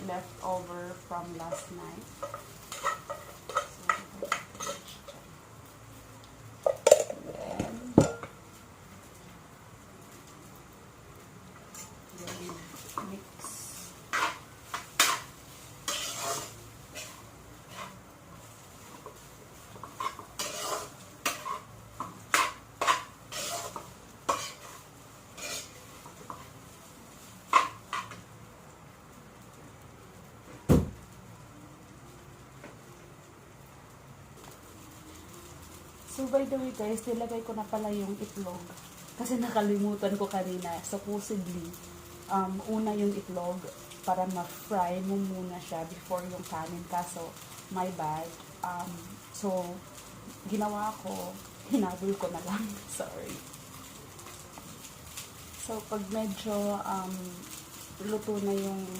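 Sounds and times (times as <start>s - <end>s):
light sizzling: 0.0s - 58.9s
utensil scraping a frying pan: 1.0s - 5.3s, 11.7s - 28.2s.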